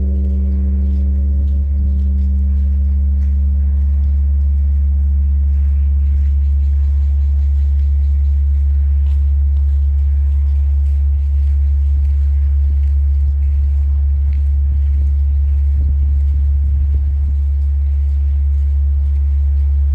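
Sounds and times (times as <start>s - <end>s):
large temple bell ringing: 0.0s - 14.2s.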